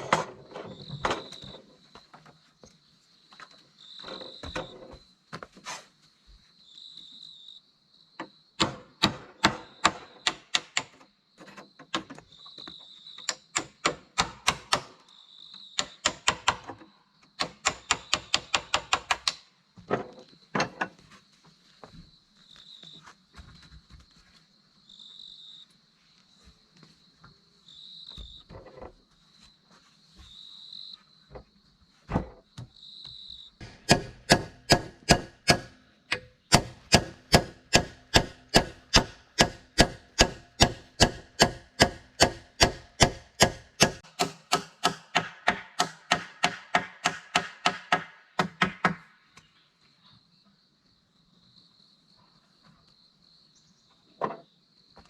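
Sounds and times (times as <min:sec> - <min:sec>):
insect chirping in pulses: 0:06.6 - 0:08.6, 0:15.0 - 0:16.1, 0:24.8 - 0:25.7, 0:27.6 - 0:28.6, 0:30.3 - 0:31.3, 0:32.5 - 0:33.6
fast chopping strikes: 0:33.6 - 0:49.0.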